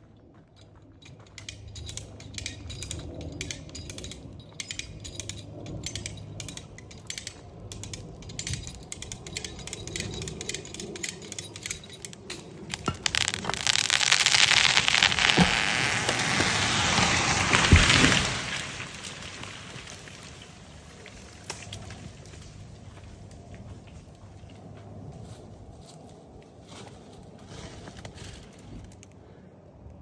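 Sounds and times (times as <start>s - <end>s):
wood cracking and popping: 1.0s - 23.0s
branches crashing: 12.6s - 22.2s.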